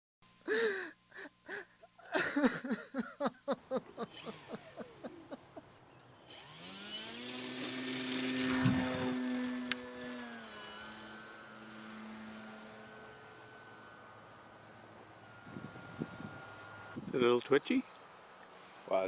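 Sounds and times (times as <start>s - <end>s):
model plane motor whine: 3.9s - 19.0s.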